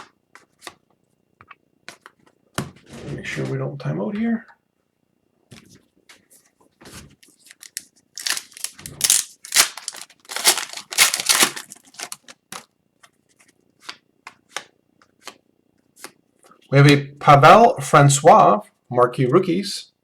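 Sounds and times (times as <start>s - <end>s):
foil wrapper tearing and crinkling: 7.2s - 12.7s
cards handled with light clicks: 7.2s - 15.4s.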